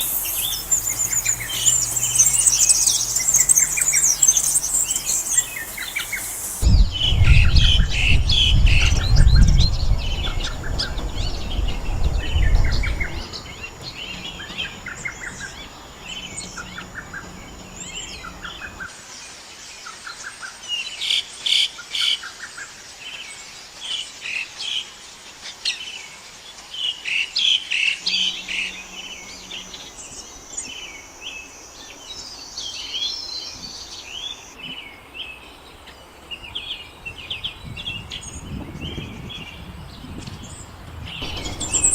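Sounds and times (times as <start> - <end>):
songbirds chirping and singing: 0.0 - 6.8, 41.2 - 41.9
low rumble: 0.0 - 18.8, 41.1 - 41.9
thin steady high whine: 0.0 - 18.9, 28.0 - 33.1, 41.1 - 41.9.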